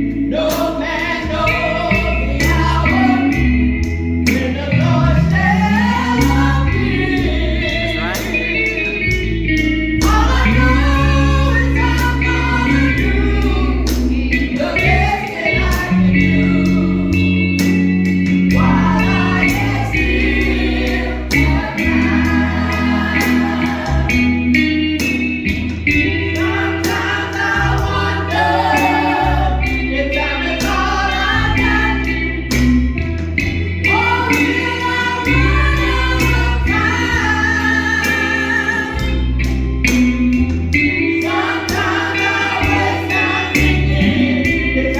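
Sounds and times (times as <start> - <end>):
bass: 0.0 - 44.9
choir singing gospel music: 0.0 - 44.9
steady drum beat: 14.8 - 29.9.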